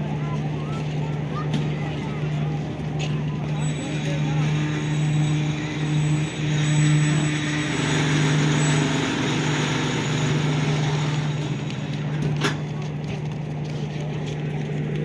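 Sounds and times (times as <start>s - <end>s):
diesel locomotive engine humming: 0.0s - 15.0s
hissing rolling noise: 3.4s - 12.7s.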